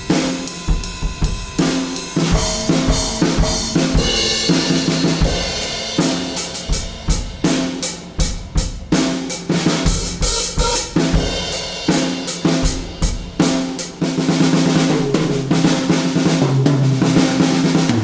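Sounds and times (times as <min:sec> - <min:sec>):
cymbal wash: 0:00.0 - 0:14.0
drum kit playing a groove: 0:00.0 - 0:18.0.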